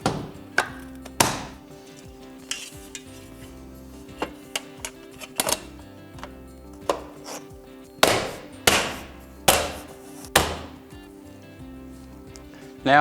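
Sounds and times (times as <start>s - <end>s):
background music: 0.0s - 13.0s
loud sharp knocks: 1.2s - 1.6s, 8.0s - 10.8s
trim clips clicking: 4.2s - 7.5s.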